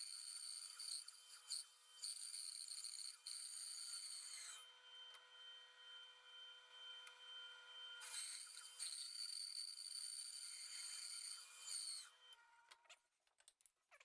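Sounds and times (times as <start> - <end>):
bandsaw cutting wood: 8.0 - 12.2.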